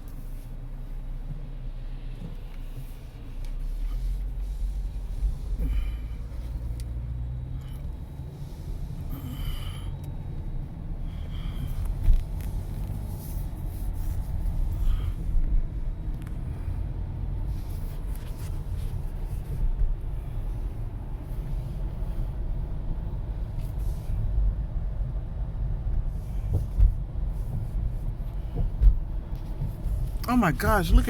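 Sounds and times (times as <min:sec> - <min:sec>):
car driving rumble: 0:00.0 - 0:31.0.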